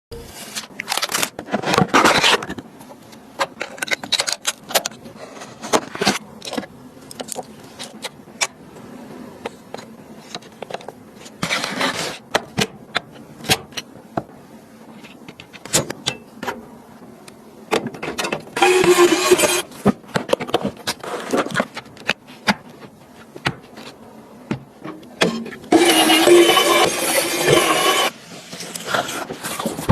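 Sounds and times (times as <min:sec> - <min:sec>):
rustling and scraping: 0:09.4 - 0:12.3, 0:19.1 - 0:25.7, 0:27.9 - 0:29.9.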